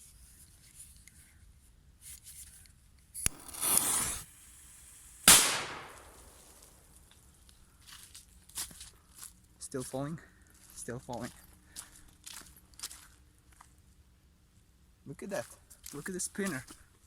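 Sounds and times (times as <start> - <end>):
firecracker bang: 3.3 - 6.8
firecracker crack: 3.3 - 7.1.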